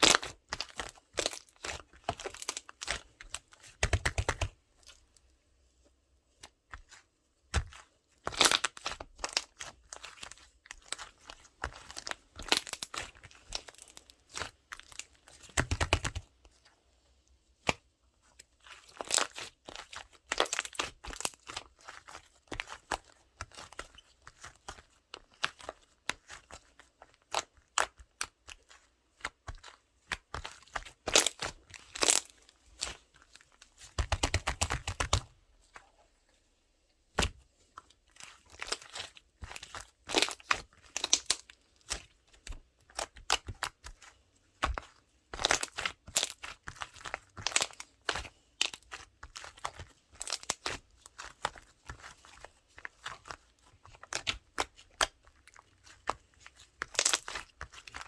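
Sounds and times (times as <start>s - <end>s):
slime crackling and popping: 11.7s - 16.2s, 20.4s - 21.6s, 31.0s - 33.0s, 34.0s - 35.3s, 38.5s - 44.0s, 45.4s - 51.5s, 56.8s - 58.0s.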